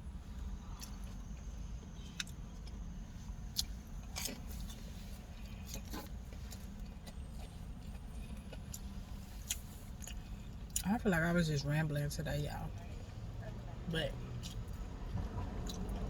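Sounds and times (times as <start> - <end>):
car interior rumble: 0.0 - 16.0
person chewing food: 0.7 - 10.8, 15.6 - 16.0.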